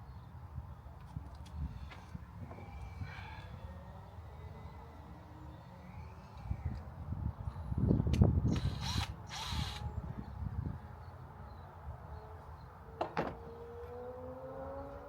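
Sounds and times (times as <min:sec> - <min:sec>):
power drill bursts: 0:08.5 - 0:09.8.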